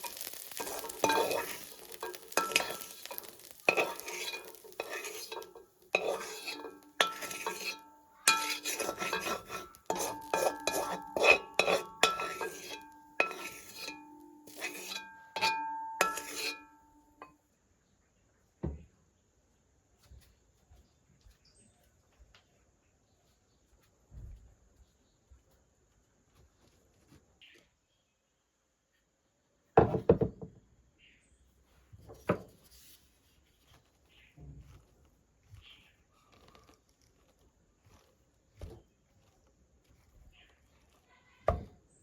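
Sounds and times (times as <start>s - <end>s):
metal spoon scraping metal pan: 0.0s - 17.0s.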